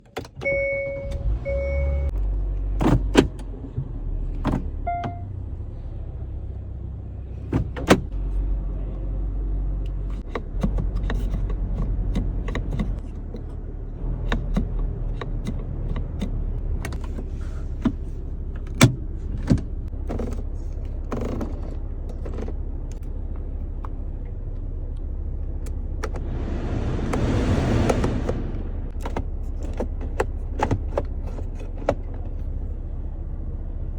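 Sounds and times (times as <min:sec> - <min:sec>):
rushing noise: 0:26.0 - 0:29.1.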